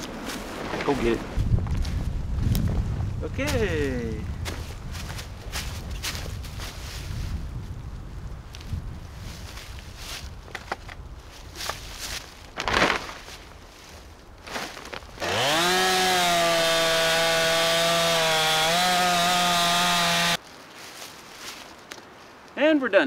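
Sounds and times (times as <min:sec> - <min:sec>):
chainsaw cutting wood: 0:15.2 - 0:20.4.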